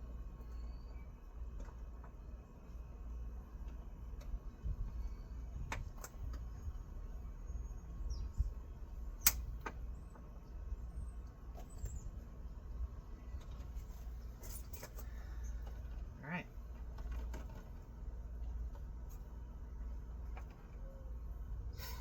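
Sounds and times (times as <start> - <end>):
low steady hum: 0.0 - 22.0.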